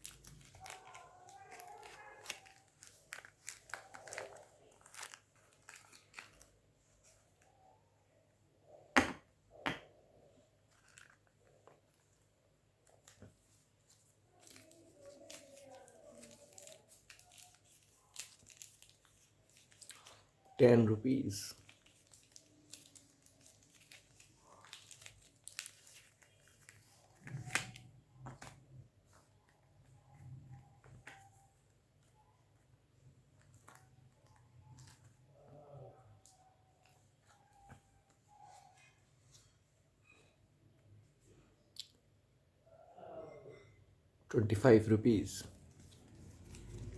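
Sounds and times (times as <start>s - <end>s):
packaging crinkling and tearing: 0.0s - 7.5s, 12.8s - 20.4s, 21.6s - 29.2s, 45.6s - 46.9s.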